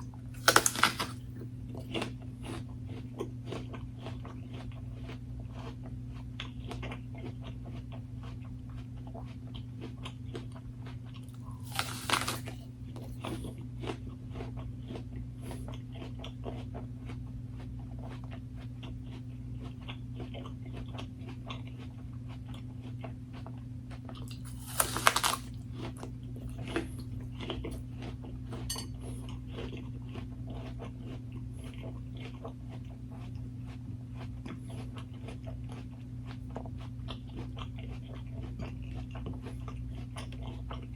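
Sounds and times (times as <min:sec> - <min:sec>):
crunchy bites: 0:00.0 - 0:05.8, 0:11.2 - 0:15.6, 0:24.0 - 0:27.8
person chewing food: 0:00.0 - 0:40.9
steady low hum: 0:00.0 - 0:40.9.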